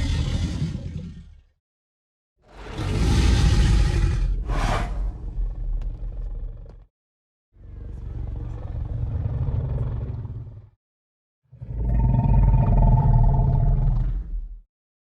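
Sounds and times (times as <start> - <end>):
sea monster roaring: 2.5 - 5.8.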